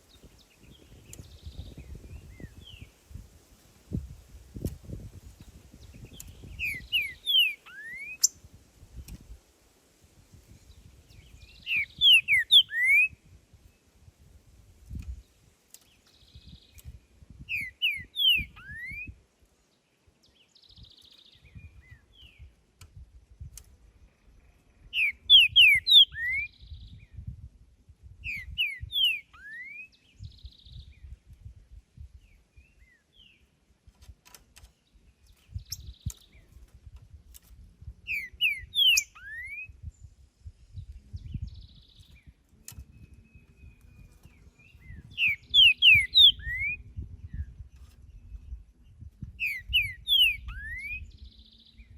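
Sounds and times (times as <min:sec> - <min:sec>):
bird whistling song: 0:05.8 - 0:08.4, 0:10.8 - 0:13.2, 0:16.2 - 0:19.2, 0:24.8 - 0:27.3, 0:28.2 - 0:31.2, 0:35.3 - 0:36.5, 0:38.0 - 0:48.6, 0:49.4 - 0:51.9.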